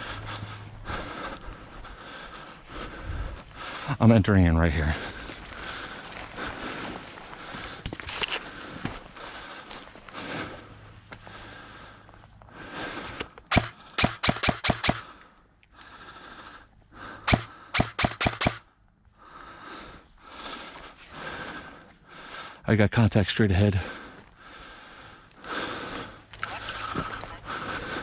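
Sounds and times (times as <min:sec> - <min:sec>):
airsoft gun shots: 0:13.5 - 0:15.1, 0:17.3 - 0:18.6.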